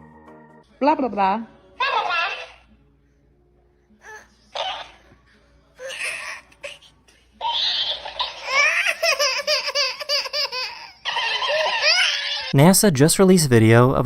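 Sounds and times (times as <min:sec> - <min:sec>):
baby laughing: 0:05.8 - 0:12.6.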